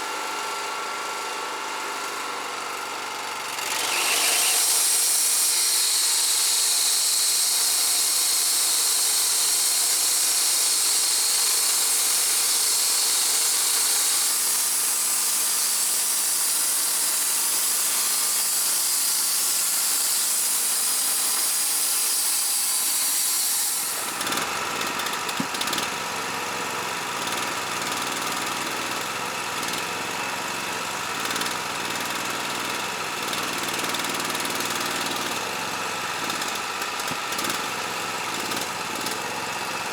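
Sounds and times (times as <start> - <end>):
sawmill engine running: 2.0 - 39.9
band saw blade hissing: 3.8 - 7.4, 13.6 - 24.2.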